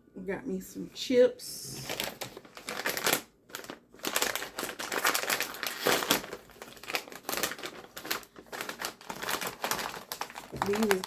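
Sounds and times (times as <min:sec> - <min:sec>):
foil chip bag crinkling: 0:01.8 - 0:11.0.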